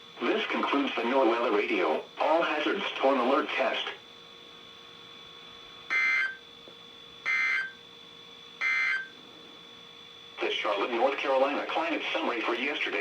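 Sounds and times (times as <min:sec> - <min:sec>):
faint radio background hum: 0:00.0 - 0:07.8, 0:08.6 - 0:13.0
harsh buzzing digital tone bursts: 0:05.9 - 0:06.4, 0:07.3 - 0:07.7, 0:08.6 - 0:09.1.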